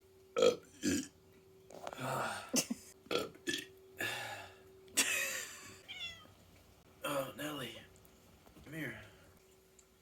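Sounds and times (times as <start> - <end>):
person belching: 0.4 - 1.1, 3.1 - 3.7.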